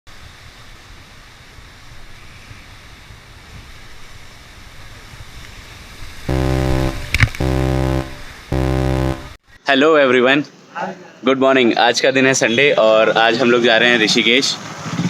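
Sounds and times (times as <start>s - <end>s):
loud steady tone: 6.3s - 9.4s.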